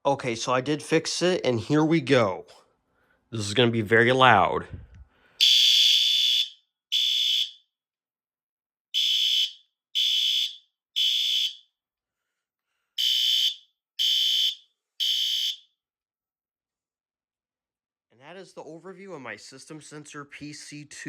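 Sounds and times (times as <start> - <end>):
fire alarm horn blasts: 5.4 - 7.7, 8.9 - 11.7, 13.0 - 15.8.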